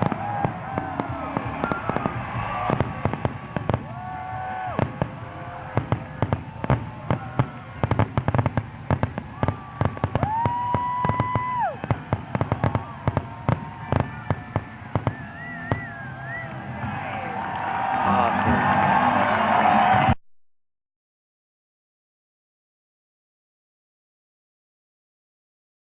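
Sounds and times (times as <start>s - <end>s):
firework bangs and crackles: 0.0s - 20.2s.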